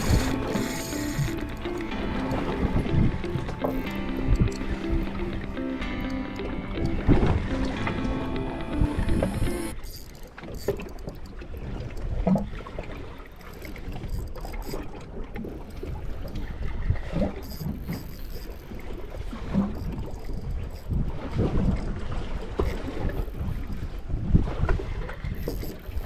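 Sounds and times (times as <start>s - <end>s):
wind on microphone: 0.0s - 5.8s
boat engine rumble: 0.0s - 12.2s.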